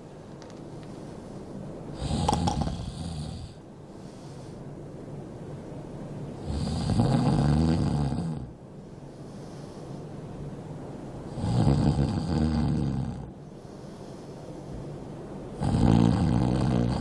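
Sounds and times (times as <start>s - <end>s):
quiet breathing: 0.7s - 17.0s
man snoring heavily: 2.0s - 3.6s, 6.4s - 8.6s, 11.3s - 13.4s, 15.6s - 17.0s.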